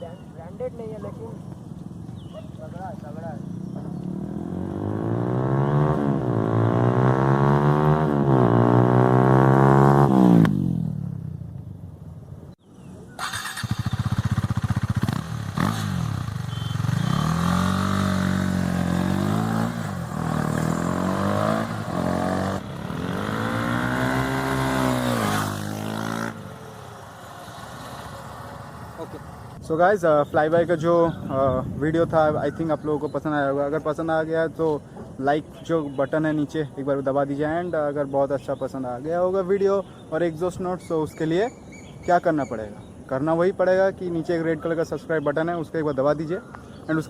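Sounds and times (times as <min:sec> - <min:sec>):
motorcycle engine revving: 0:03.0 - 0:11.5, 0:13.2 - 0:29.6.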